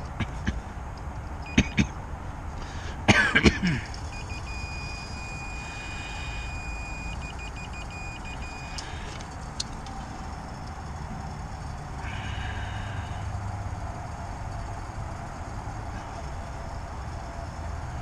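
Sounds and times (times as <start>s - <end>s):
multimeter continuity beeper: 1.4s - 1.8s, 3.9s - 9.2s.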